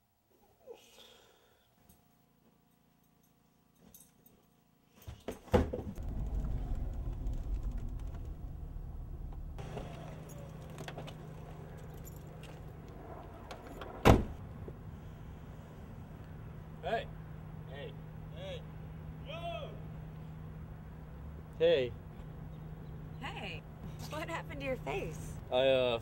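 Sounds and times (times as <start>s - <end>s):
motor rumbling with hum: 6.0s - 13.5s.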